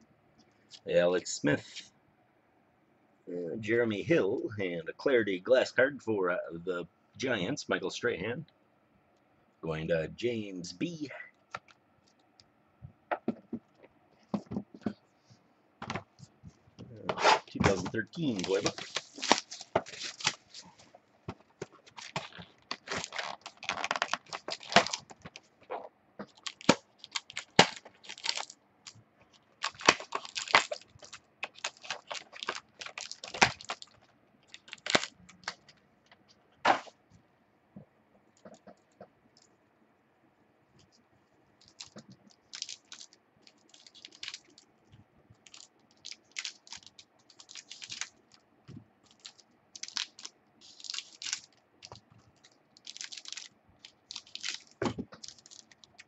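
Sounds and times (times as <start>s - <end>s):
cards being handled: 17.1s - 25.6s
card packs being torn open: 17.4s - 20.7s, 21.7s - 25.4s, 26.3s - 28.6s, 29.6s - 35.7s, 41.6s - 44.6s, 45.5s - 48.2s, 49.1s - 56.0s
wrappers crinkling: 17.4s - 35.8s, 41.6s - 44.7s, 45.4s - 48.4s, 49.0s - 56.0s.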